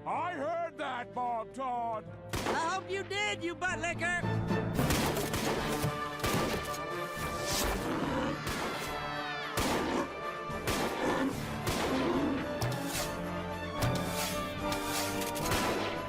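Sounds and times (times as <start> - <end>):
cartoon soundtrack music: 0.0 - 16.0.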